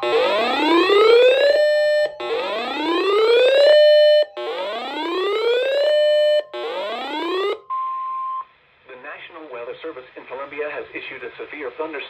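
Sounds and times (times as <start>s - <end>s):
rising whooping siren alarm: 0.0s - 7.7s.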